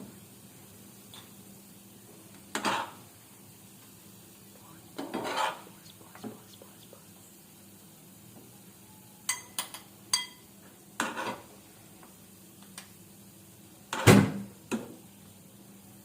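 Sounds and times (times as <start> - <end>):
spoon scraping cookware: 5.0 - 5.6
spoon clinking on metal cookware: 9.3 - 11.4.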